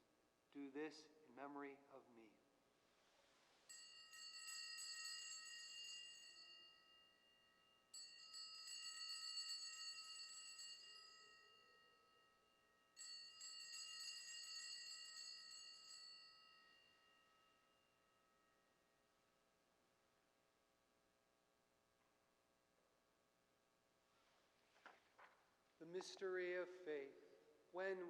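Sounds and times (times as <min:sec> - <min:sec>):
altar bells jingling: 0:03.7 - 0:18.9.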